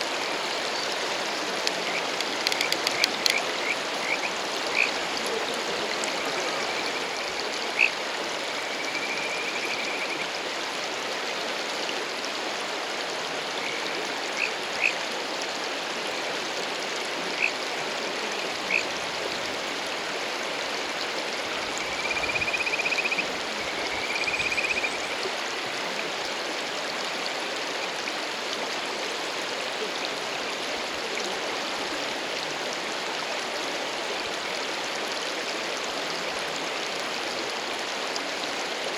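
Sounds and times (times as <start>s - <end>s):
frogs calling: 0.0s - 10.4s, 13.4s - 15.2s, 16.9s - 19.6s, 21.3s - 25.4s
rushing mountain stream: 0.0s - 38.9s
short high frog chirps: 1.6s - 4.9s, 6.6s - 8.0s, 21.9s - 23.2s, 23.8s - 25.0s.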